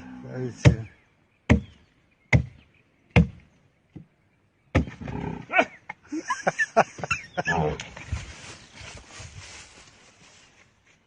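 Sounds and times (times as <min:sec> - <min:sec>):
rough scuffling: 0:07.9 - 0:11.0.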